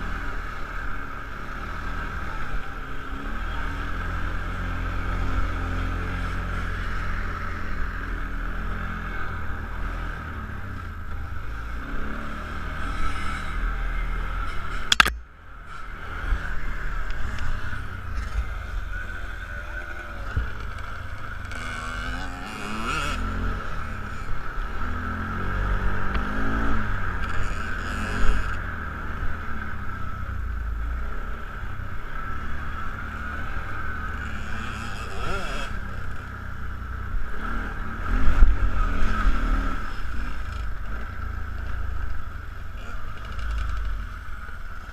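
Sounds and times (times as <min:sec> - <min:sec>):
atv engine revving: 0:00.0 - 0:44.9
sharp click: 0:14.7 - 0:15.2.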